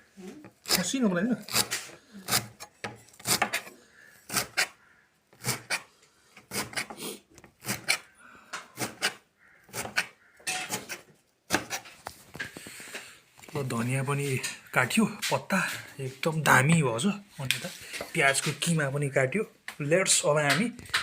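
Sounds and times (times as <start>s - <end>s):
knife chopping on wooden board: 3.2s - 3.7s, 8.8s - 11.9s.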